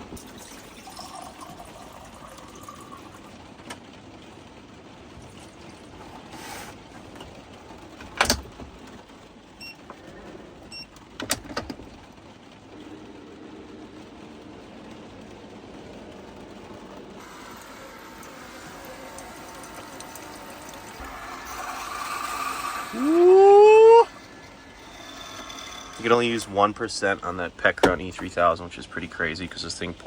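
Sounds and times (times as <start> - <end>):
coffee machine hum: 0.0 - 3.8, 5.1 - 8.8, 12.7 - 28.4.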